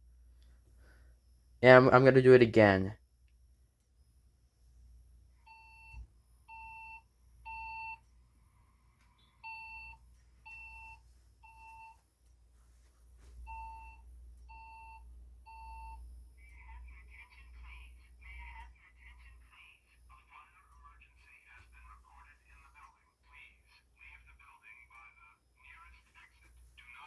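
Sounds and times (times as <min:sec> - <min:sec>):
person speaking: 0:01.6 - 0:03.0
fire alarm beeps: 0:05.4 - 0:08.1, 0:09.2 - 0:12.0, 0:13.4 - 0:16.4.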